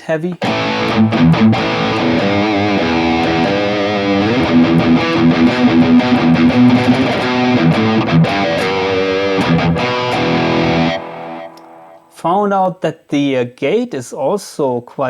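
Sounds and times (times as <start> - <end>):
electric guitar playing notes: 0.4 - 12.2.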